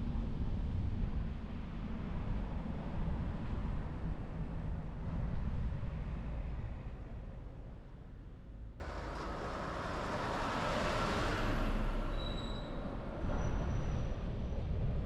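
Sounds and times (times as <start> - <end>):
rush of passing noise: 8.8 - 14.4
car road rumble: 8.8 - 15.0.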